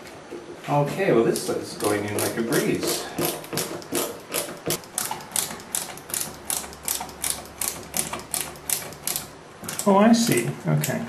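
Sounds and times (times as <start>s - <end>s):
ratcheting tool clicking: 1.4s - 9.9s.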